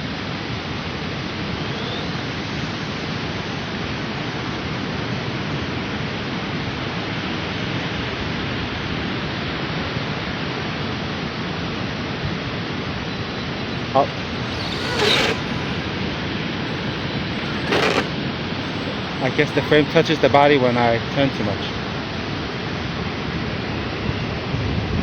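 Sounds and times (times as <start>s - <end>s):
wind: 14.0s - 22.3s.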